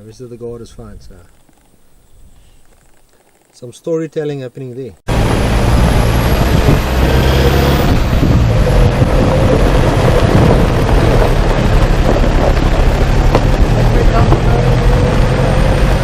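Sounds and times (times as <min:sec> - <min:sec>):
loud dense driving noise: 0:05.1 - 0:16.0
vehicle engine drone: 0:05.1 - 0:16.0.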